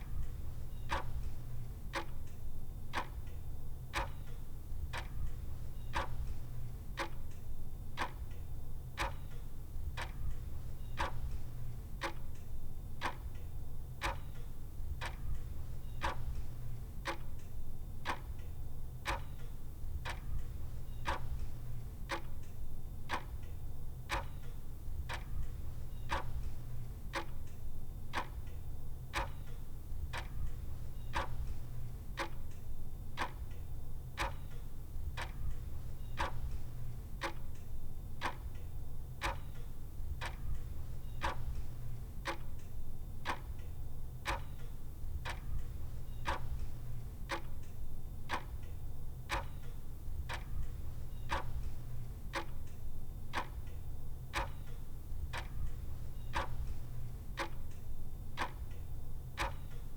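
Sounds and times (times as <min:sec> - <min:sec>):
clock ticking: 0:29.1 - 0:32.6, 0:33.2 - 0:33.6, 0:35.2 - 0:37.6, 0:38.2 - 0:57.8, 0:58.4 - 0:58.8, 0:59.4 - 0:59.9.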